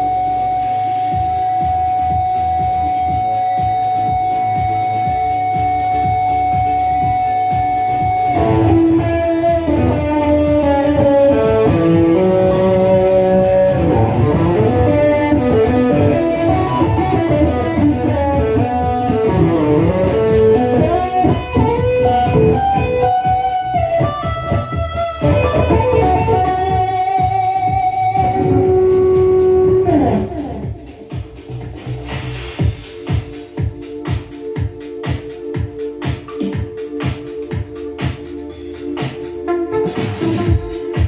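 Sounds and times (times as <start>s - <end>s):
electric guitar melody: 0.0s - 31.1s
bass: 0.0s - 41.0s
steady drum beat: 0.0s - 41.0s.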